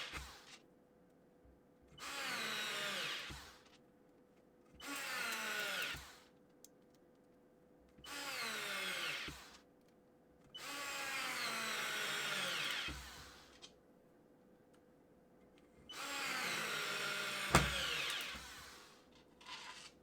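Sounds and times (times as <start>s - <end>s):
cordless screwdriver motor whine: 15.9s - 18.6s.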